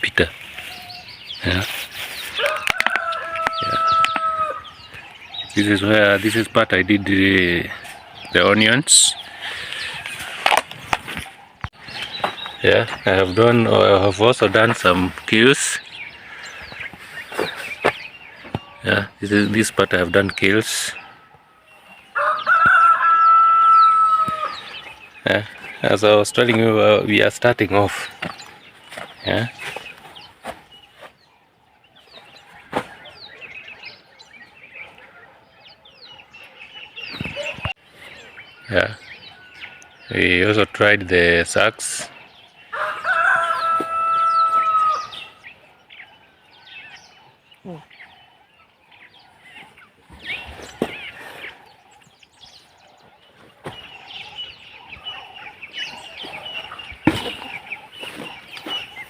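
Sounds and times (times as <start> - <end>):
chickens clucking: 0.0 - 46.0, 46.8 - 59.0
small birds chirping: 0.0 - 59.0.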